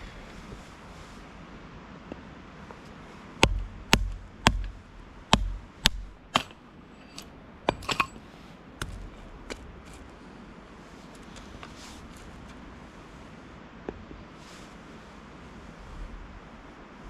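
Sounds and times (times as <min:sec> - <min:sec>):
dull thump: 0:03.4 - 0:06.6
firewood cracking: 0:03.4 - 0:08.2.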